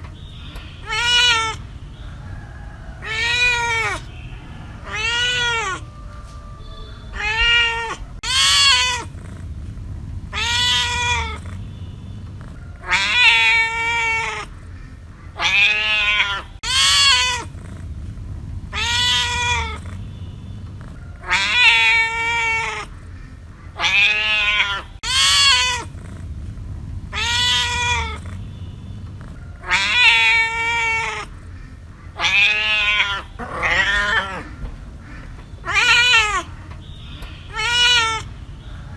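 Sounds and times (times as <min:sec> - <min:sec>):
cat meowing: 0:00.8 - 0:01.6, 0:03.0 - 0:04.1, 0:04.8 - 0:06.0, 0:06.7 - 0:09.4, 0:10.3 - 0:11.6, 0:12.8 - 0:14.6, 0:15.4 - 0:17.8, 0:18.7 - 0:20.0, 0:21.2 - 0:23.0, 0:23.8 - 0:26.2, 0:27.1 - 0:28.4, 0:29.6 - 0:31.4, 0:32.1 - 0:34.6, 0:35.2 - 0:36.7, 0:37.5 - 0:38.3.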